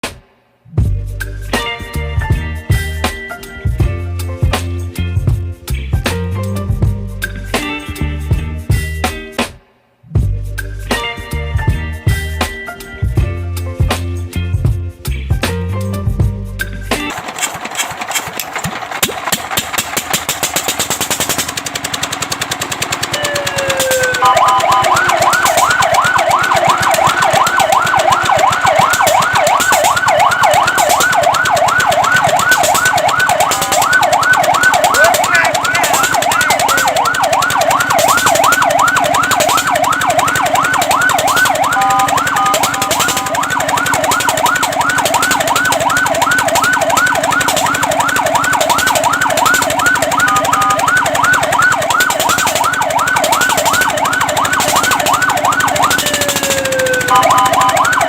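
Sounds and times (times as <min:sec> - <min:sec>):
fire truck siren yelping: 0:17.1 - 0:58.0
steady horn-like siren tone: 0:23.2 - 0:58.0.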